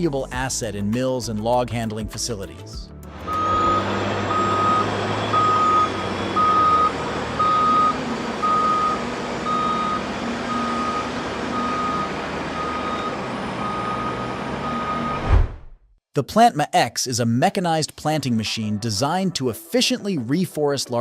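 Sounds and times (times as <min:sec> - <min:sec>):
diesel engine running: 0:03.0 - 0:15.3
reversing alarm beeping: 0:03.2 - 0:15.3.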